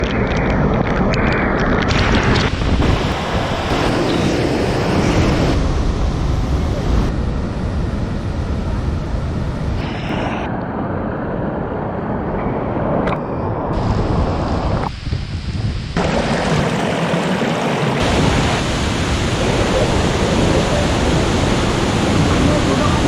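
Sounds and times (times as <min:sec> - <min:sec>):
waterfall roaring: 0:01.9 - 0:10.5, 0:15.8 - 0:23.0.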